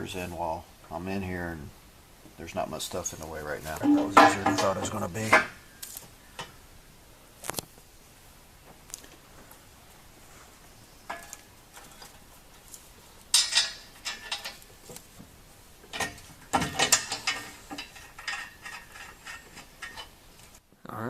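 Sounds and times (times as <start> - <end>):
metal tool clatter: 3.8 - 5.5, 13.3 - 14.7, 15.9 - 20.2.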